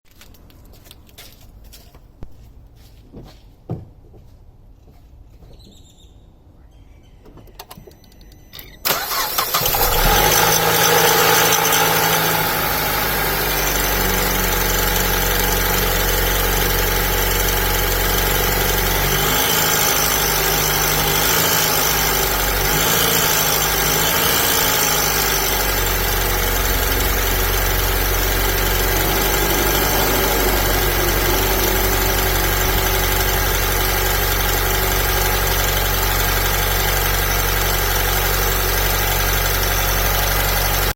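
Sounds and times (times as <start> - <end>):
car engine starting and idling: 8.6 - 40.9.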